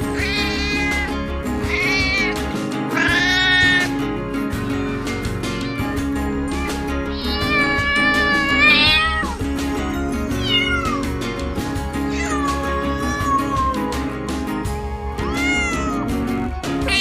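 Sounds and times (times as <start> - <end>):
cat meowing: 0.0 - 3.9, 5.5 - 9.4, 10.2 - 11.1, 12.0 - 13.9, 15.2 - 16.1
background music with steady beat: 0.0 - 17.0.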